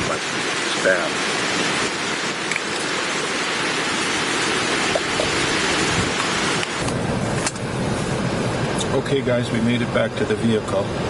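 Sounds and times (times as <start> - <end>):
steady rain: 0.0 - 11.0.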